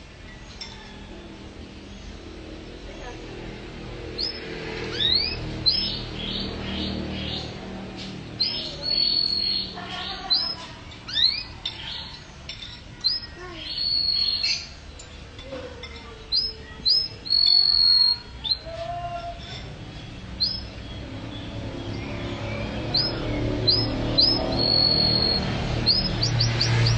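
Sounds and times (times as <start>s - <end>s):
songbirds chirping and whistling: 0.0s - 26.9s.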